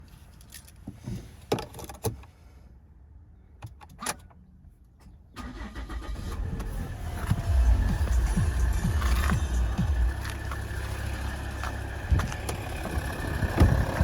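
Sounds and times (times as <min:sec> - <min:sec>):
diesel engine starting and running: 0:05.3 - 0:14.0.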